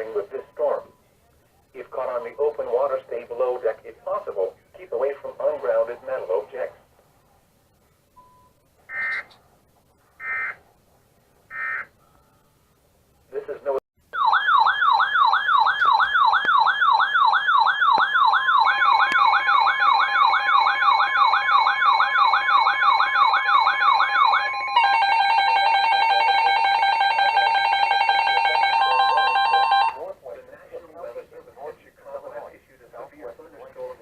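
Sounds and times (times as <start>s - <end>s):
pulsing multi-tone alert: 14.2s - 30.0s
steady alert tone: 18.2s - 30.0s
electronic alert tone warbling: 18.6s - 30.0s.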